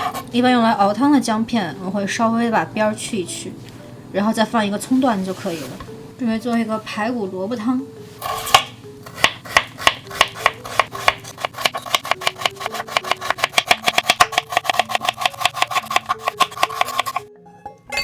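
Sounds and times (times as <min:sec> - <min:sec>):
soft background music: 0:00.0 - 0:18.0
knife chopping on cutting board: 0:08.2 - 0:17.2.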